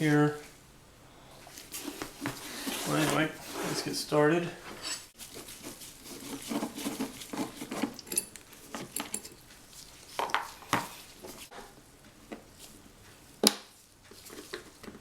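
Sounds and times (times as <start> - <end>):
screwdriver scraping and clicking: 6.0 - 9.4.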